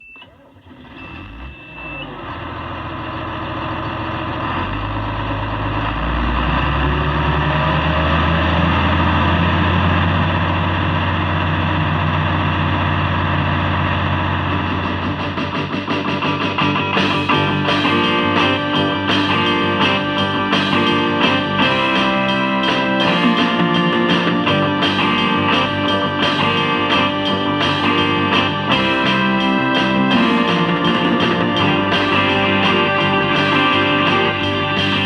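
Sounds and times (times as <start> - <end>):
distorted electric guitar chords: 4.3 - 35.0
low drone: 5.0 - 35.0
strummed guitar rhythm: 14.5 - 35.0.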